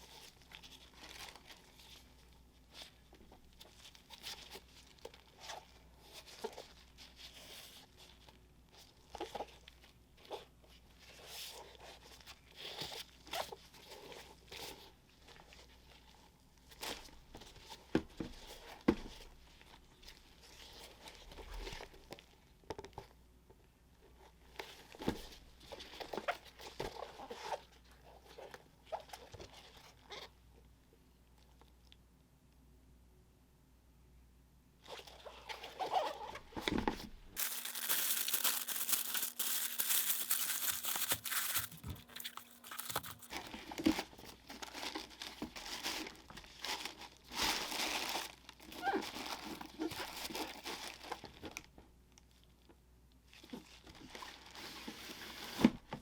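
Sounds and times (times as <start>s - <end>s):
paper crinkling and rustling: 35.8s - 51.7s.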